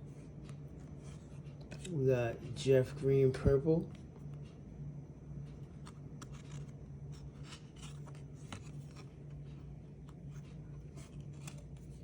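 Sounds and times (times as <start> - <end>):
low steady hum: 0.0 - 12.0
cards scraping against each other: 5.8 - 9.2, 10.1 - 12.0.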